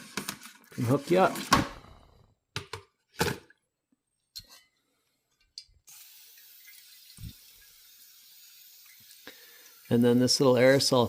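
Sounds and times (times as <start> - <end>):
faucet water running into sink: 5.9 - 11.0.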